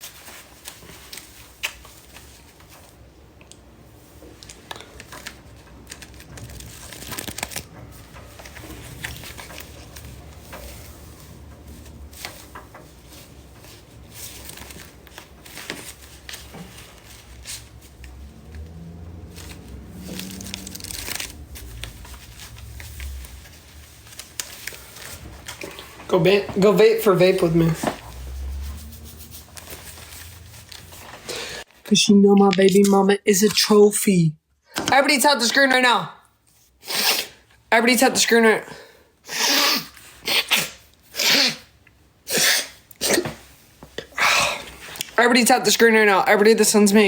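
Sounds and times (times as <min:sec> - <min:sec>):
paper banknotes rustling: 0:00.0 - 0:31.6.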